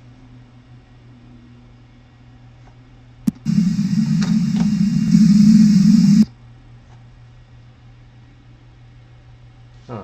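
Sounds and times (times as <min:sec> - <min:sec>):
low electrical hum: 0:03.3 - 0:06.3
microphone hiss: 0:03.3 - 0:06.3.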